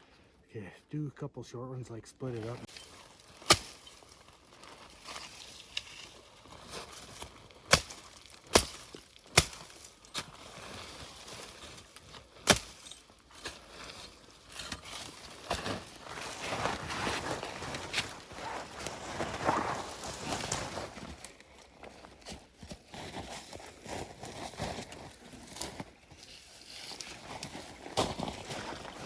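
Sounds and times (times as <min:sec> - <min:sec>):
brush crunching and rustling: 0:02.2 - 0:29.0
wooden sticks cracking: 0:02.6 - 0:10.4.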